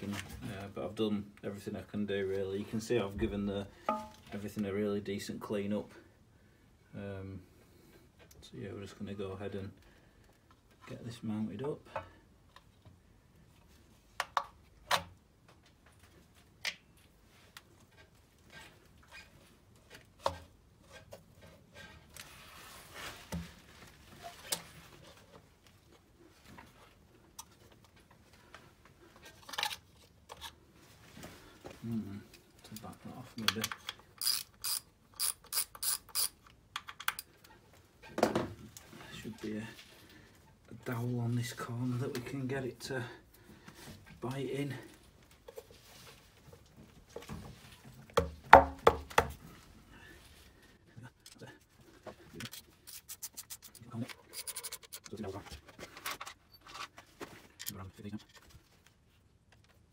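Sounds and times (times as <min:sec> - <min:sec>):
metal parts and hand tools clicking: 0:32.7 - 0:37.6, 0:52.3 - 0:58.4.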